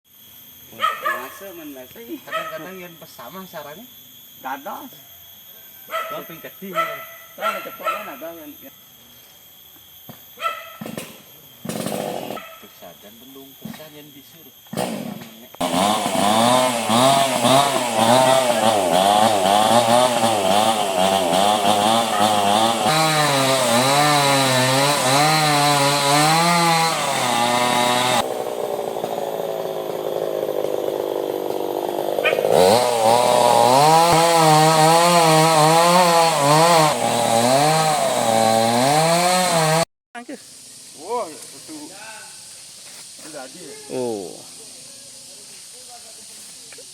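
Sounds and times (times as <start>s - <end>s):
chainsaw cutting wood: 9.5s - 39.9s.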